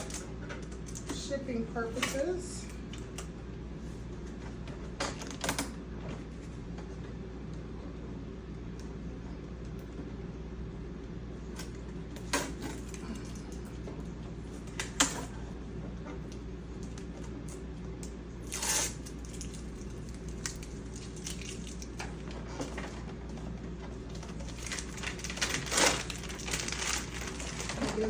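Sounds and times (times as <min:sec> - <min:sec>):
steady low hum: 0:00.0 - 0:28.0
packaging rustling: 0:24.2 - 0:28.0.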